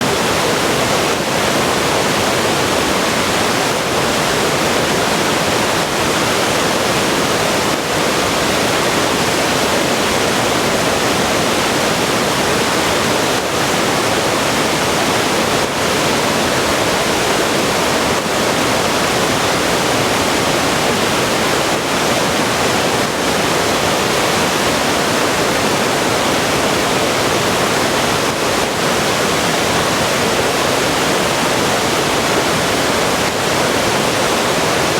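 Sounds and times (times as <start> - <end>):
water rushing over rocks: 0.0 - 34.9.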